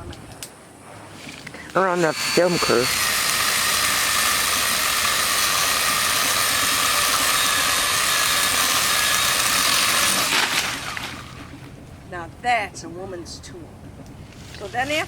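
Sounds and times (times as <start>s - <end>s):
chainsaw cutting a branch: 1.8s - 11.2s.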